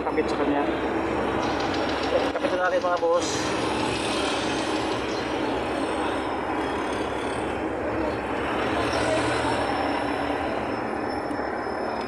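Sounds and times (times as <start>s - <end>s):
passing highway traffic: 0.0s - 12.0s.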